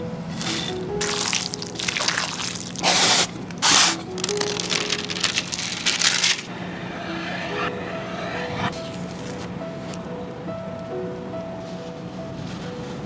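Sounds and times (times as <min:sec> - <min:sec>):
background music: 0:00.0 - 0:13.0
water poured into meat: 0:00.4 - 0:06.2
minced meat stirred and squished: 0:00.4 - 0:06.4.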